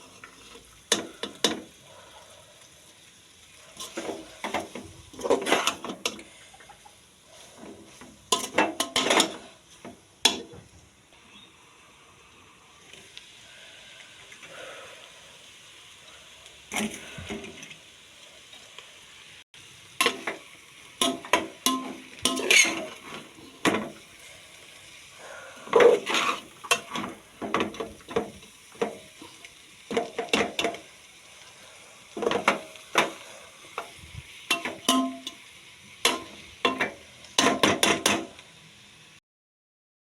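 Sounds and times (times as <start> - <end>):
utensil scraping and clattering in pan: 0.0 - 1.8, 3.7 - 10.7, 16.7 - 17.8, 20.0 - 24.3, 25.6 - 30.9, 32.1 - 38.4
faint sizzle: 0.0 - 39.2.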